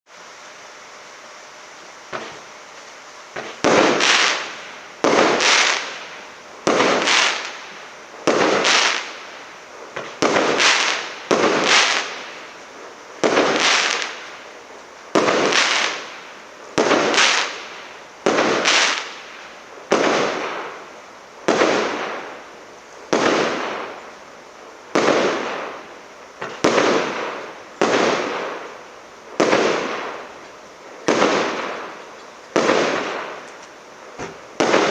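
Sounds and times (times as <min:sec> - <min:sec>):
small firework pop: 0:02.1 - 0:02.5
firework shots banging: 0:02.1 - 0:02.6, 0:03.3 - 0:34.9.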